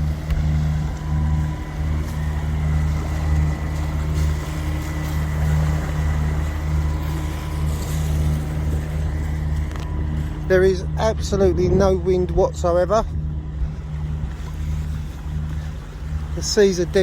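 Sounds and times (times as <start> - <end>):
boat diesel engines droning: 0.0 - 17.0.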